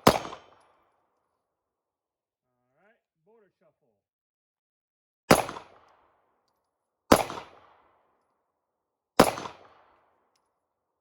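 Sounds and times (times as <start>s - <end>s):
pistol shots: 0.0s - 0.8s, 5.3s - 6.1s, 7.1s - 8.0s, 9.2s - 10.1s.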